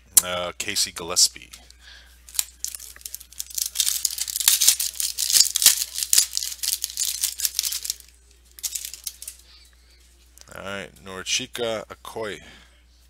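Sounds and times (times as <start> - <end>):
foil pack tearing: 2.3 - 8.0
stiff cards clicking: 2.3 - 9.4.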